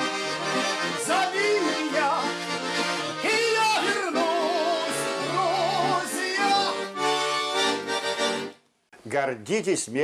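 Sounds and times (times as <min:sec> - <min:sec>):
button accordion chords: 0:00.0 - 0:08.6
person singing with vibrato: 0:00.4 - 0:07.2.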